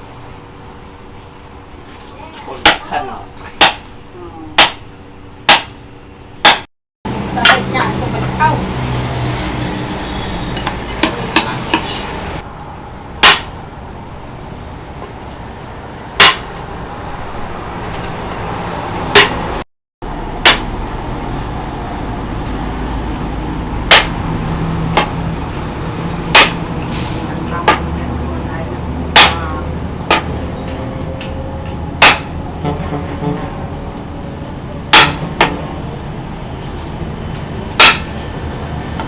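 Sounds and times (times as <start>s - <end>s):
hammer striking metal: 3.6s - 3.9s, 4.6s - 4.8s, 5.5s - 5.8s, 6.4s - 6.7s, 10.5s - 12.4s, 13.2s - 13.6s, 16.2s - 16.6s, 19.1s - 19.5s, 20.4s - 20.8s, 23.9s - 24.2s, 24.9s - 25.2s, 26.3s - 26.7s, 29.1s - 32.4s, 34.9s - 35.6s, 37.8s - 38.2s.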